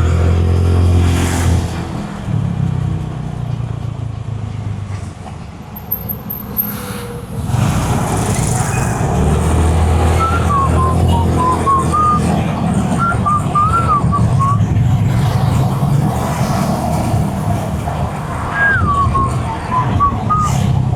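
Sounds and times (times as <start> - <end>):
road noise: 0.0 - 20.9
vehicle engine running: 5.2 - 19.6.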